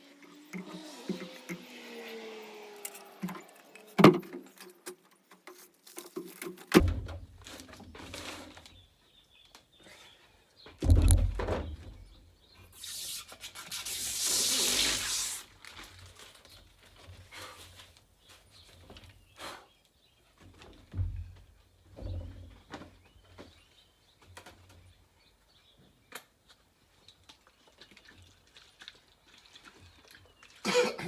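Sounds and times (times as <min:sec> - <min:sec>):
knocks and bumps on roof: 0:10.7 - 0:12.2
rubbing scraping noise: 0:12.7 - 0:15.5.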